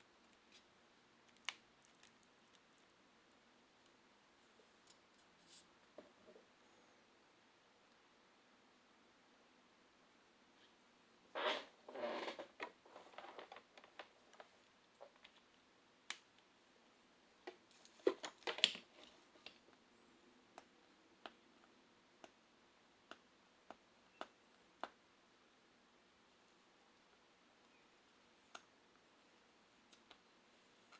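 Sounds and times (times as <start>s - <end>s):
scraping rustle: 11.4s - 14.1s.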